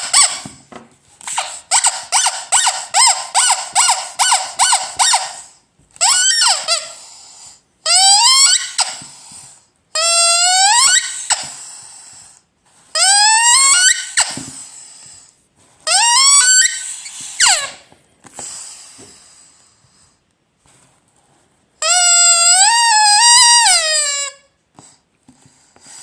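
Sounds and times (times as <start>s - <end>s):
rubber squeaky toy squealing: 0.0s - 0.6s, 1.2s - 9.4s, 10.0s - 11.7s, 12.9s - 14.7s, 15.9s - 17.9s, 21.8s - 24.5s.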